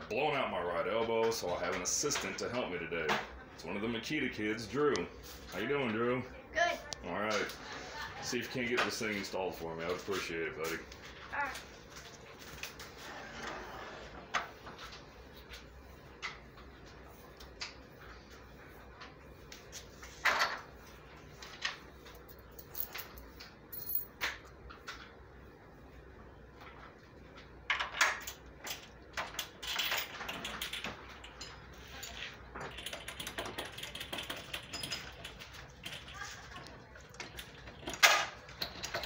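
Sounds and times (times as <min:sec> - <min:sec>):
small metal parts clinking: 0:22.1 - 0:24.4, 0:27.8 - 0:39.0.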